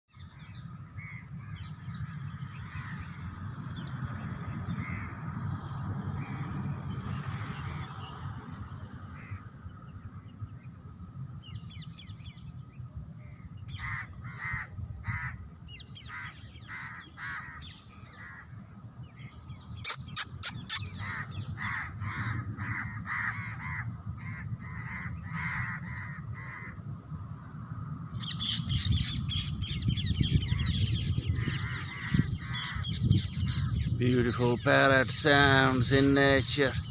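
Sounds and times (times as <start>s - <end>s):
loud shrill parrot calls: 19.8s - 23.4s
parrots calling: 19.8s - 26.7s.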